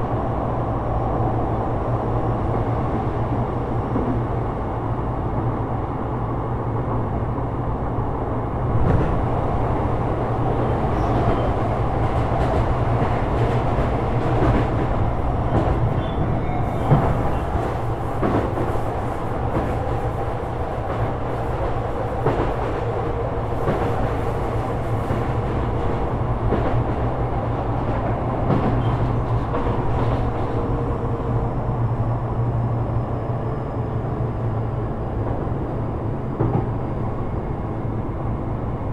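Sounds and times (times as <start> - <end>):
electric train rumbling: 0.0 - 38.9.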